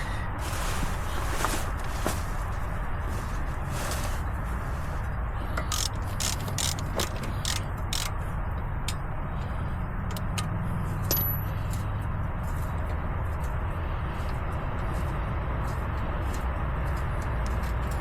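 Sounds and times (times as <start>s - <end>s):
ratchet wrench clicking: 5.6s - 8.2s.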